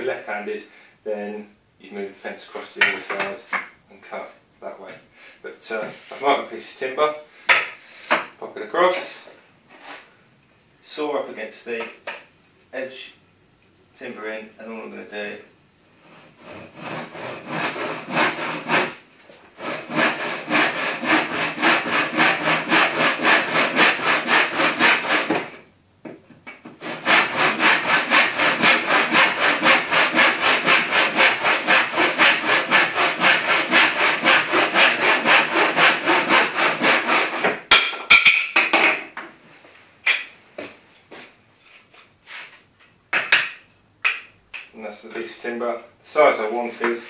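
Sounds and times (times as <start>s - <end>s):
hand saw cutting timber: 16.0s - 25.7s, 26.7s - 37.6s.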